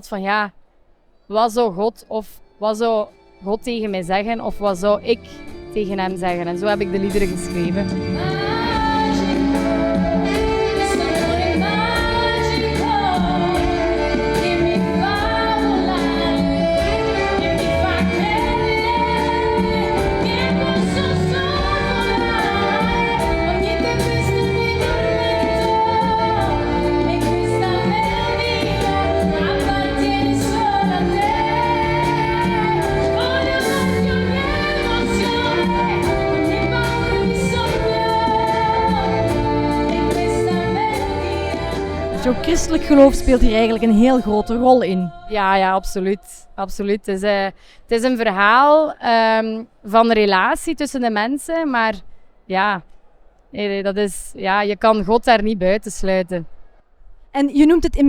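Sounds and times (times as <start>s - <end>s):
instrumental accompaniment: 2.4s - 44.8s
woman singing gospel-style song: 2.7s - 51.9s.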